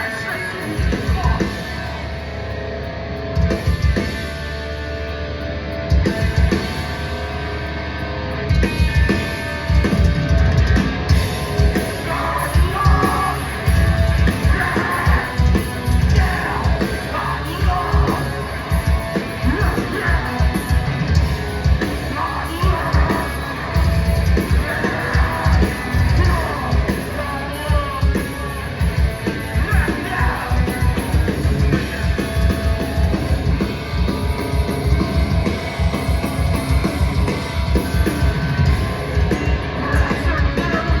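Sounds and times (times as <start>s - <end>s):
fast heavy drumming: 0.0s - 2.3s, 3.4s - 4.6s, 5.9s - 7.8s, 8.4s - 41.0s
distorted guitars: 0.0s - 41.0s
shouted vocals: 11.9s - 21.2s.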